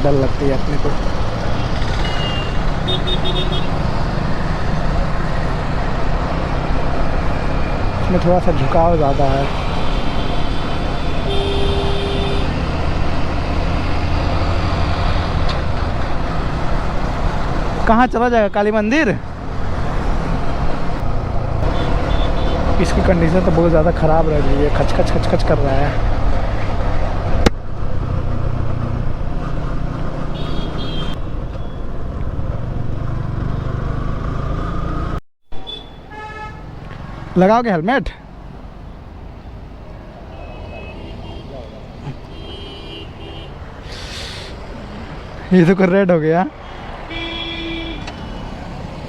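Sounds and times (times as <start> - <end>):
motorcycle engine and road noise: 0.0 - 49.0
horn honking: 1.5 - 4.0, 9.4 - 12.9, 21.6 - 23.1, 30.3 - 31.8, 35.6 - 37.3, 40.3 - 44.6, 47.0 - 48.4.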